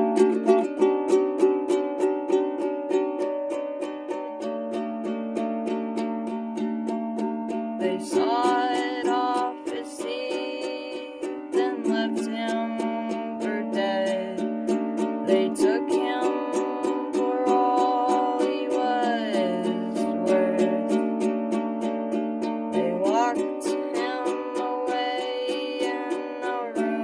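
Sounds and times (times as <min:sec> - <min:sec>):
strummed string instrument: 0:00.0 - 0:27.0
person singing long held notes: 0:07.8 - 0:14.6, 0:15.2 - 0:21.1, 0:22.8 - 0:27.0.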